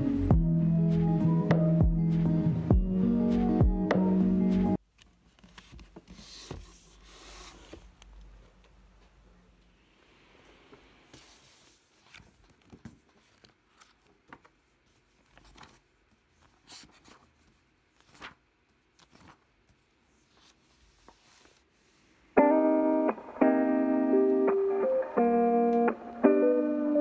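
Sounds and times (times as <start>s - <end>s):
keyboard background music: 0.0s - 4.8s, 22.4s - 27.0s.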